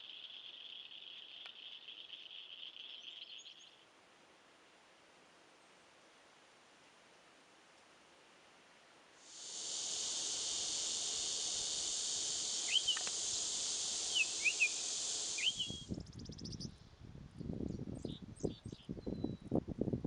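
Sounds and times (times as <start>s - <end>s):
hissing insect chorus: 0.0s - 3.7s, 9.2s - 16.1s
bird chirps: 0.0s - 3.8s, 9.3s - 16.6s.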